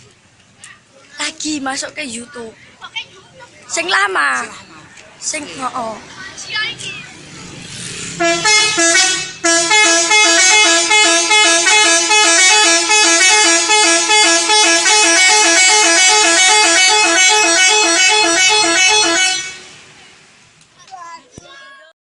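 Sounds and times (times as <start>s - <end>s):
multi-tone air horn melody: 8.2s - 19.8s.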